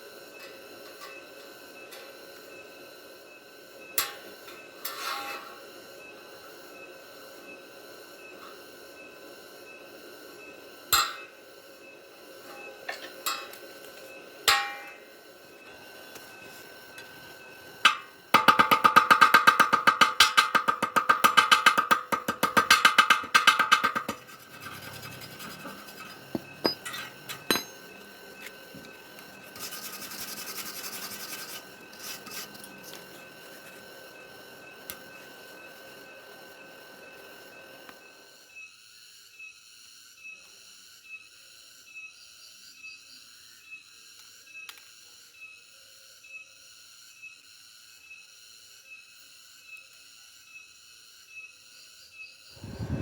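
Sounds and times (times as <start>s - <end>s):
scraping on ringing metal: 4.8s - 5.6s, 14.5s - 15.0s, 20.3s - 27.9s
sharp knocks: 18.4s - 24.3s.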